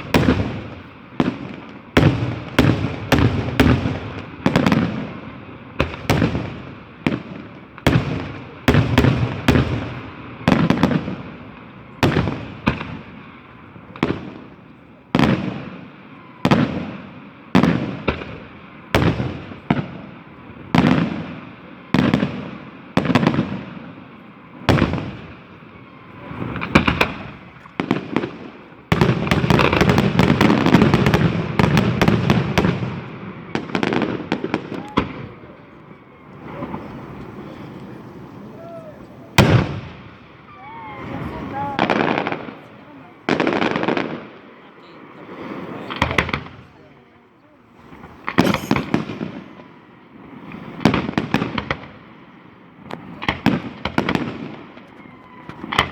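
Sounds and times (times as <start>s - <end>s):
fireworks bursting with echo: 0.0s - 55.9s.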